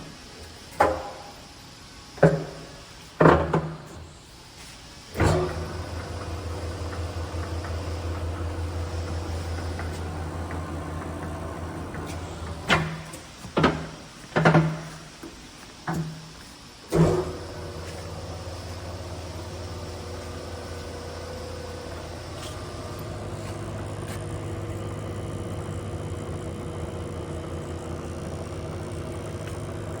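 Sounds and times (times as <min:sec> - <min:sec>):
lathe running with low hum: 0:00.0 - 0:30.0
lathe clunks: 0:05.2 - 0:13.9.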